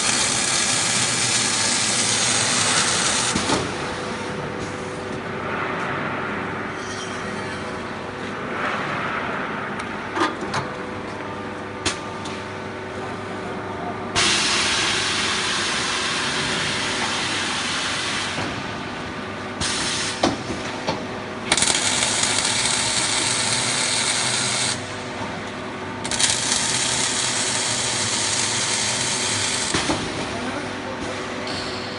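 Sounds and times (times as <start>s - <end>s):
welding machine hiss: 0.0s - 4.2s, 14.2s - 18.4s, 19.6s - 20.4s, 21.4s - 25.1s, 26.0s - 30.2s
machine hum: 0.0s - 31.9s.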